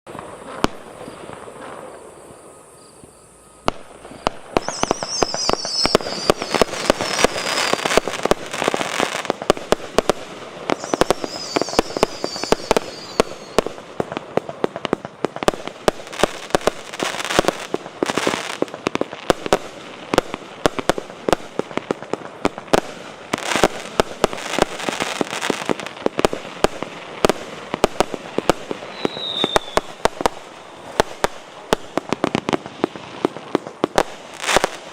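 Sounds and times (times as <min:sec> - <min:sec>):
falling firework whistles: 0:00.1 - 0:13.8, 0:22.7 - 0:33.4, 0:34.0 - 0:34.9
firework bangs and crackling: 0:00.1 - 0:34.9.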